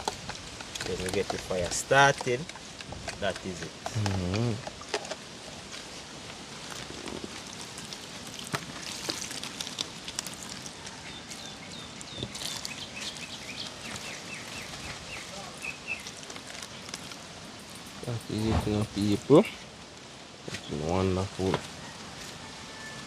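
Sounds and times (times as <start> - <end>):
light clicks and crackles: 0.0 - 14.2, 15.9 - 19.1.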